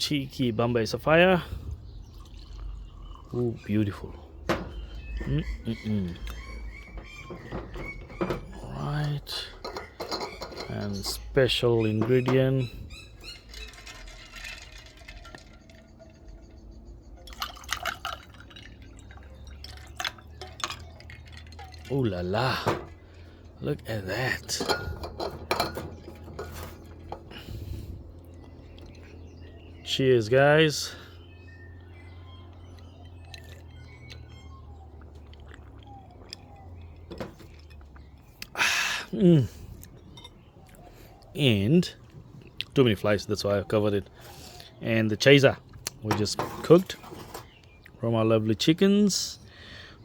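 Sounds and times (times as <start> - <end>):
glass clinks: 9.6 - 11.2, 24.5 - 26.8
liquid poured into a glass: 17.3 - 21.9.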